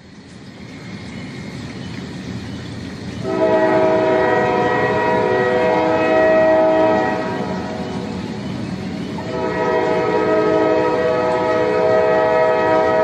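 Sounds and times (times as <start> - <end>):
train rumble: 0.0 - 13.0
train horn chord: 3.2 - 8.1, 9.2 - 13.0.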